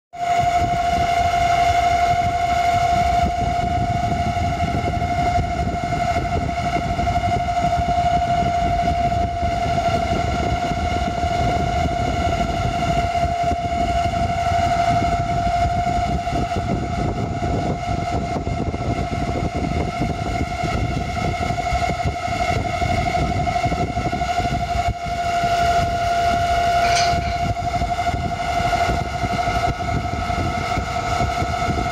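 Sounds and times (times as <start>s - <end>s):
fan motor whining: 0.2s - 31.9s
low rumble: 26.7s - 28.0s.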